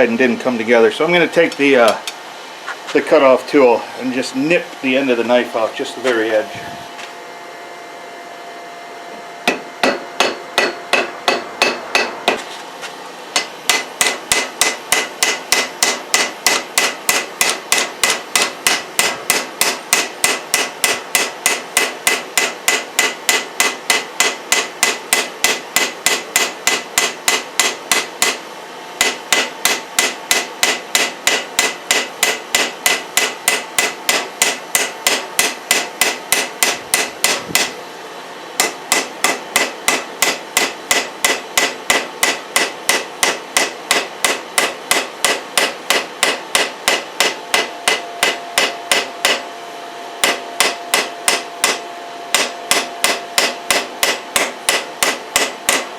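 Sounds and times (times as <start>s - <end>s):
hammer striking steel on anvil: 9.4s - 12.5s, 13.3s - 37.8s, 38.6s - 49.5s, 50.2s - 55.9s.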